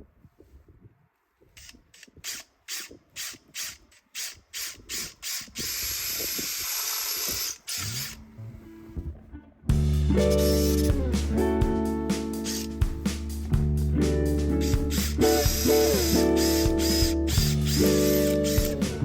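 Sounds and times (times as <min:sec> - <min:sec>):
pressurised spray hissing: 0:10.2 - 0:11.0, 0:14.6 - 0:19.0.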